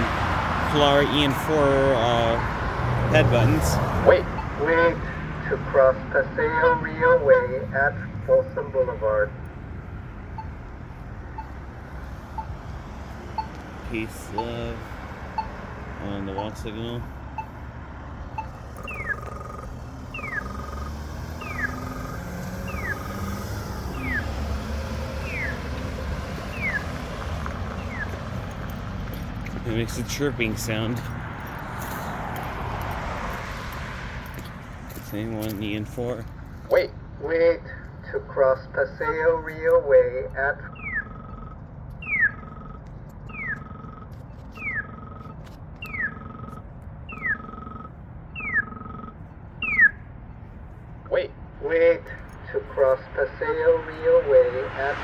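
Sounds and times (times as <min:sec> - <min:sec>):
short steady beep: 0:03.1 - 0:05.2, 0:10.3 - 0:25.8, 0:40.7 - 0:50.0
falling electronic chirp: 0:18.4 - 0:27.0, 0:40.7 - 0:50.0.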